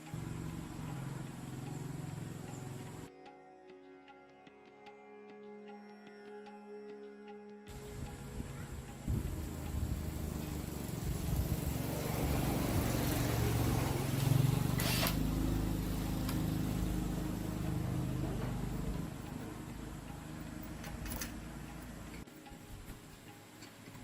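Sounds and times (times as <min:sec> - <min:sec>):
small gasoline engine running: 0:00.0 - 0:03.1, 0:07.7 - 0:22.2.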